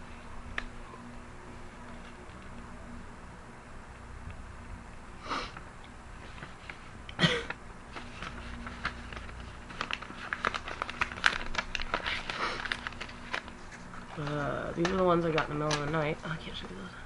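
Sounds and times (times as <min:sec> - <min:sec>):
girl coughing: 0:07.2 - 0:07.5.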